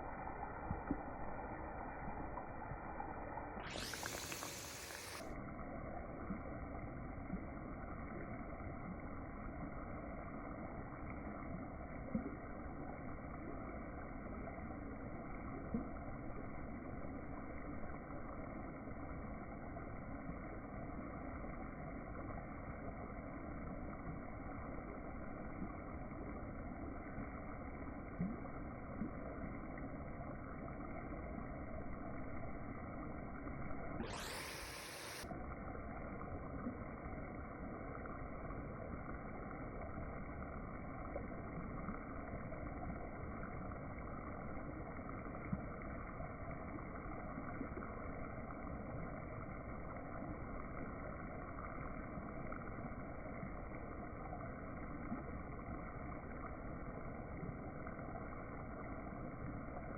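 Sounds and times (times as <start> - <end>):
food sizzling in hot oil: 3.0 - 5.2
oil popping: 3.6 - 5.2.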